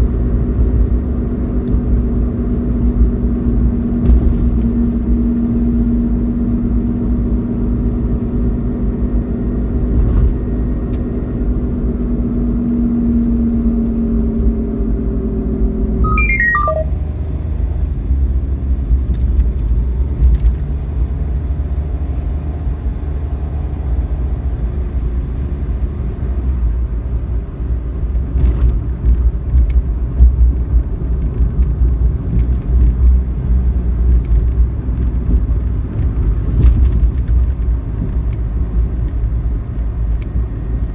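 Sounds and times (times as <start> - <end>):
road and engine rumble: 0.0 - 16.0, 17.1 - 40.9
falling run of beeps: 16.1 - 16.9.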